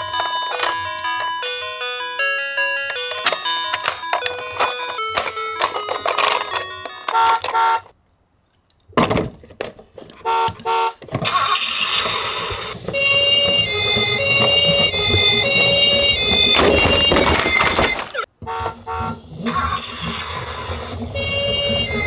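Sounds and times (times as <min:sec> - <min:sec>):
tinkly jingle notes: 0:00.0 - 0:07.1
electronic two-tone siren: 0:11.3 - 0:22.0.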